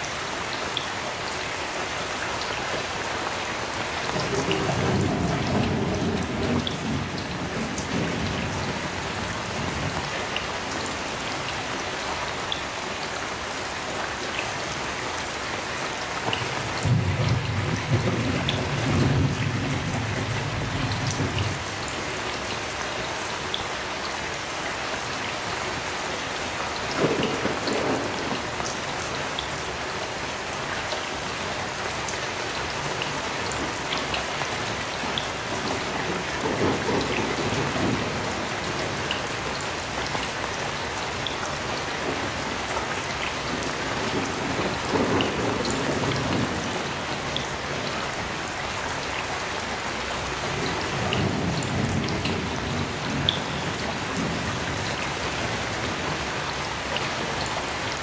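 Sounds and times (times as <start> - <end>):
heavy rain: 0.0 - 58.0
thunder rumbling: 3.8 - 10.8, 16.4 - 22.0, 26.8 - 28.7, 35.4 - 39.7, 41.5 - 48.4, 50.1 - 57.4.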